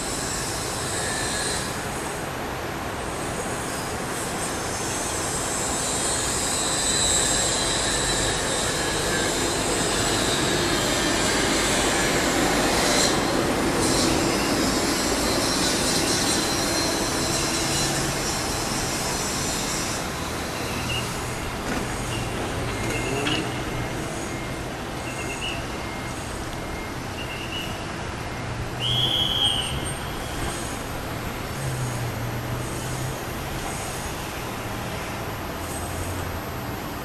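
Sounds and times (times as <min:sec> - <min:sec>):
thin high whining tones: 0:00.0 - 0:02.1, 0:03.7 - 0:31.1
vehicle noise: 0:00.0 - 0:37.0.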